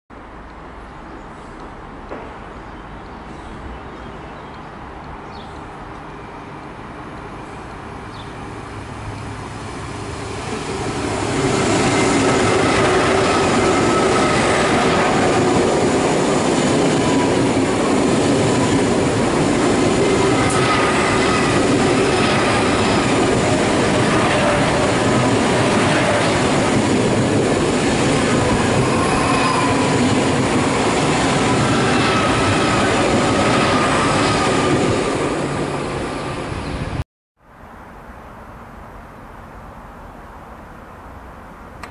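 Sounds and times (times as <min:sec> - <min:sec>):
train wheels rushing on rail: 0:05.8 - 0:37.0.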